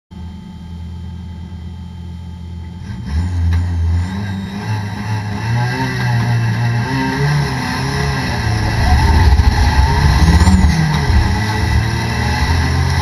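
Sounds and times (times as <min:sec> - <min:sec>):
race car engine revving: 0:02.8 - 0:13.0.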